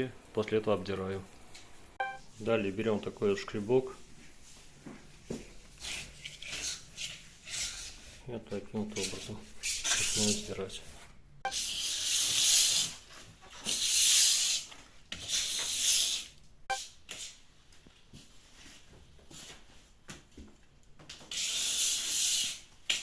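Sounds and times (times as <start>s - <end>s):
scraper stripping wet wallpaper: 5.7s - 8.2s, 8.8s - 17.4s, 21.2s - 23.0s.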